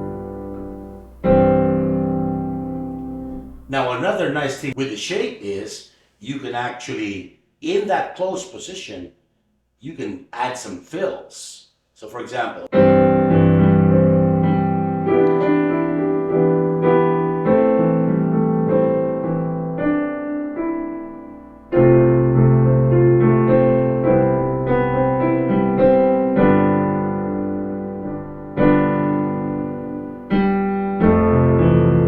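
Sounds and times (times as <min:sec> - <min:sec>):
piano playing chords: 0:00.0 - 0:04.7, 0:12.7 - 0:32.0.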